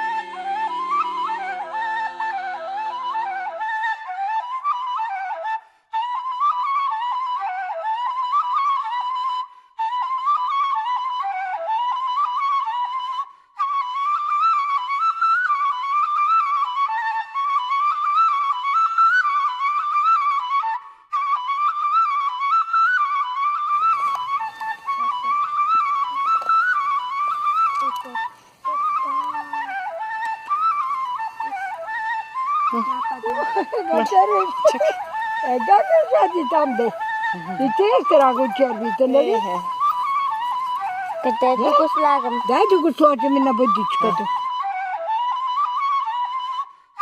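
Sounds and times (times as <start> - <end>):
high melody line: 0.0 - 4.2, 23.7 - 44.2.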